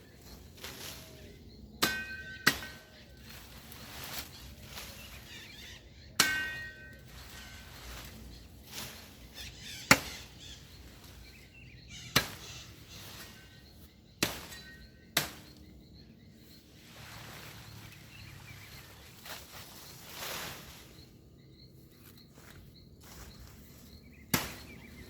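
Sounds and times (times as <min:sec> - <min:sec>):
blade chopping branches: 0:00.2 - 0:05.4, 0:06.2 - 0:15.7, 0:24.2 - 0:25.0.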